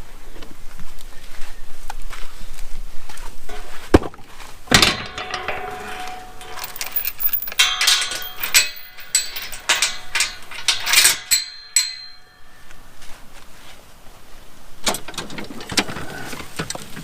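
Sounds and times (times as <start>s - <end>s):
metal fencing clanking and rattling: 3.5s - 4.0s, 4.7s - 12.5s, 14.8s - 17.0s.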